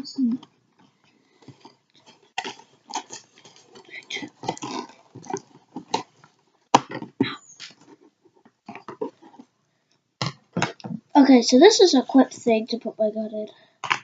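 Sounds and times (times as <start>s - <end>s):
plastic and cardboard crinkling: 0.4s - 9.6s.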